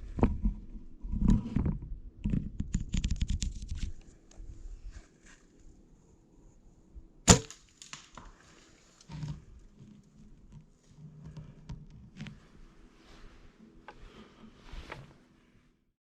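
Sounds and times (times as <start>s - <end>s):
sharp crack: 7.3s - 8.4s
faint rustling: 8.2s - 15.8s.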